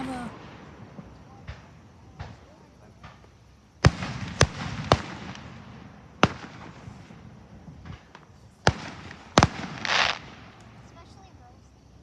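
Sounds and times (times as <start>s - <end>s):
firework shells bursting: 0.0s - 10.9s
small firework pops: 0.0s - 11.2s.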